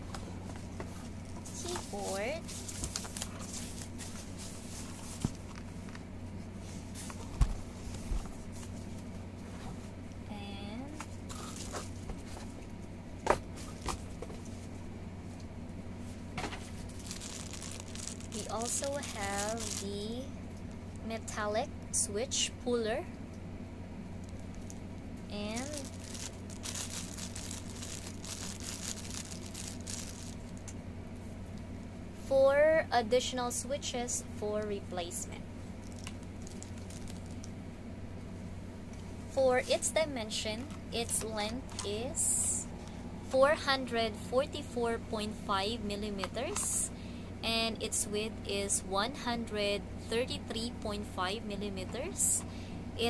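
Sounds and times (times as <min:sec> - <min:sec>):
steady low hum: 0:00.0 - 0:53.0
packaging rustling: 0:01.4 - 0:05.4, 0:16.6 - 0:19.9, 0:25.6 - 0:30.7, 0:35.8 - 0:37.5.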